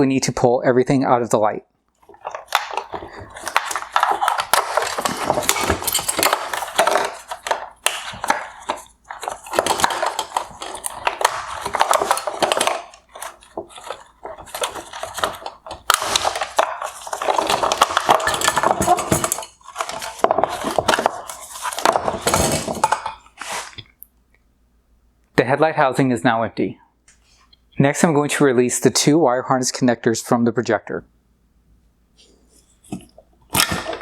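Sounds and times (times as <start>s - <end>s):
plastic and metal parts rattling: 2.0s - 23.8s, 32.9s - 34.0s.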